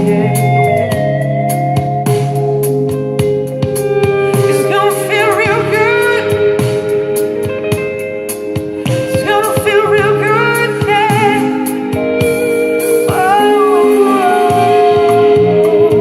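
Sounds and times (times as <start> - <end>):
wordless vocal ad-libs: 0.0 - 1.4, 4.3 - 6.9, 8.8 - 16.0
held chords: 0.0 - 16.0
steady drum beat: 0.0 - 16.0.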